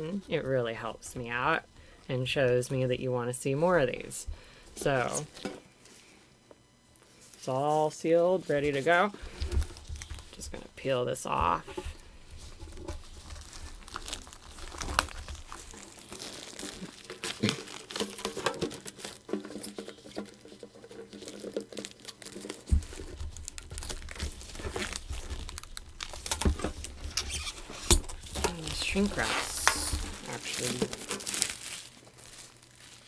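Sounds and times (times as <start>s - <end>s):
plastic wrap crinkling and tearing: 8.8s - 10.6s, 11.7s - 33.0s.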